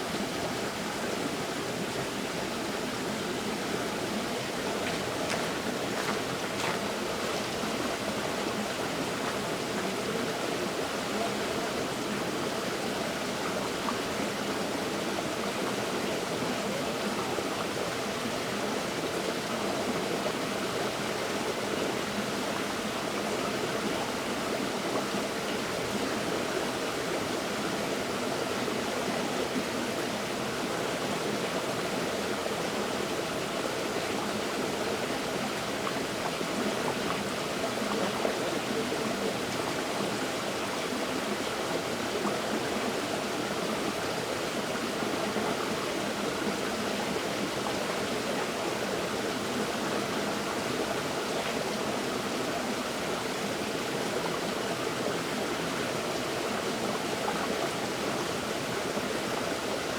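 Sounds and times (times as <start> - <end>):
river water rushing over stones: 0.7 - 12.3.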